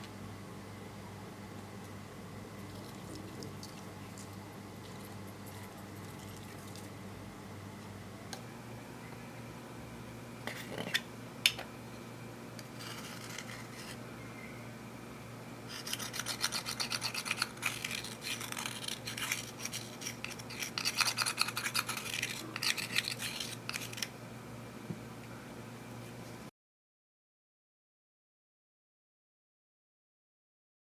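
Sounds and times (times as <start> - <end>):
slime crackling scratchily: 15.7 - 24.1.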